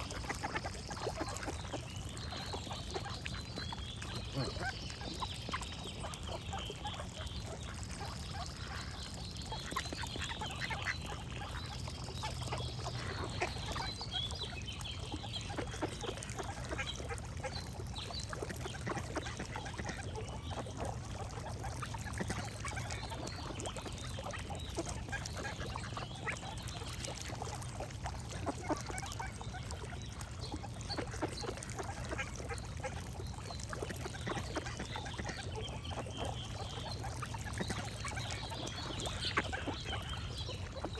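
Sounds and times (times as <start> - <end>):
ducks quacking: 0.0 - 7.8.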